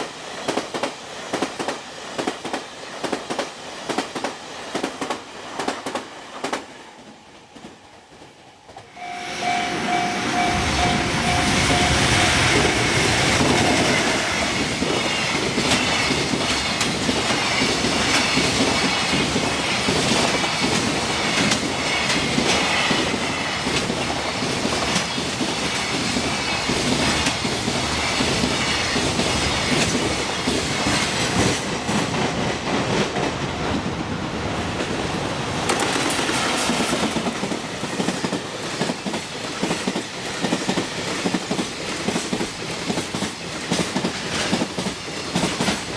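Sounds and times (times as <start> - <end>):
train wheels clickety-clack: 0.0 - 45.9
ringing tone: 9.0 - 14.7.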